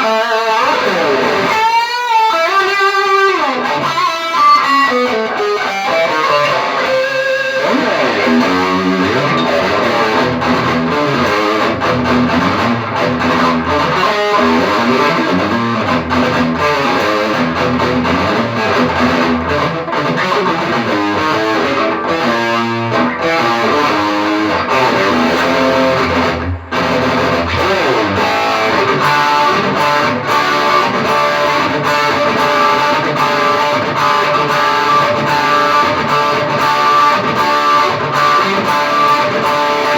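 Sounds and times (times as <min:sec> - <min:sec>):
electric guitar playing: 0:00.0 - 0:39.9.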